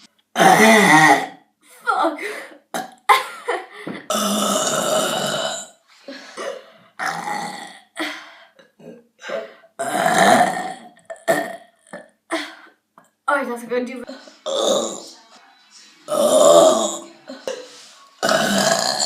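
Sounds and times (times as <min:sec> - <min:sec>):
woman burping loudly: 0:00.3 - 0:01.5, 0:02.6 - 0:05.8, 0:06.4 - 0:12.7, 0:14.4 - 0:15.1, 0:16.1 - 0:17.6, 0:18.2 - 0:19.0.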